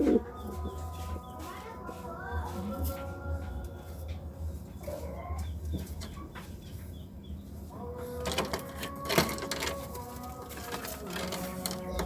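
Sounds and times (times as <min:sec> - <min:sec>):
pigeons cooing: 0:00.0 - 0:00.9, 0:08.0 - 0:12.0.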